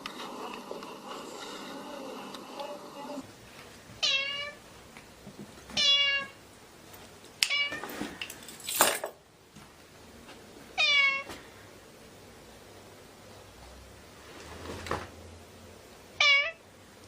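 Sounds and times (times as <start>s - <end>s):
cat meowing: 4.0s - 4.6s, 5.8s - 6.4s, 10.8s - 11.3s, 16.2s - 16.6s.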